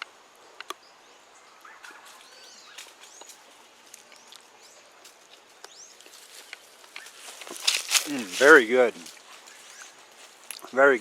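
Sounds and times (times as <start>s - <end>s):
faint bird chirps: 0.6s - 5.0s, 9.2s - 10.2s.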